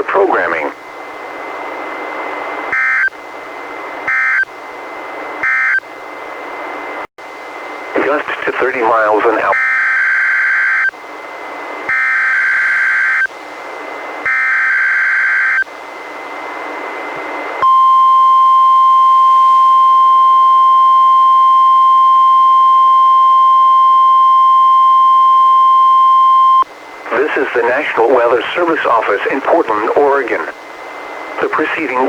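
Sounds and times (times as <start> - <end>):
radio hiss: 0.0 - 0.8, 7.9 - 9.6, 27.0 - 32.0
steady warning alarm tone: 2.7 - 3.2, 4.0 - 4.5, 5.4 - 5.9, 9.1 - 11.0, 11.9 - 13.3, 14.2 - 15.7, 17.6 - 30.0.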